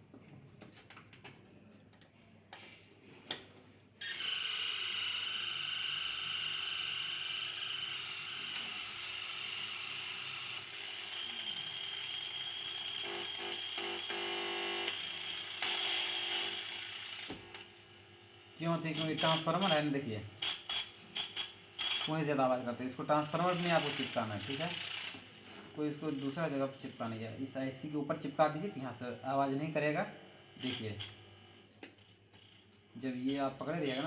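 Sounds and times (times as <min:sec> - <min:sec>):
loud buzzing from speakers: 0:13.0 - 0:15.0.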